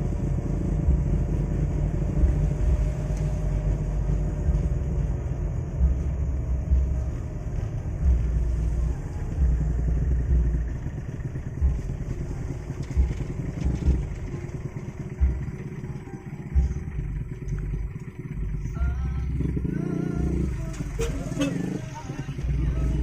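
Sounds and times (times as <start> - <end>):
vehicle engine rumbling: 0.0 - 23.0
low thumps: 15.1 - 15.7.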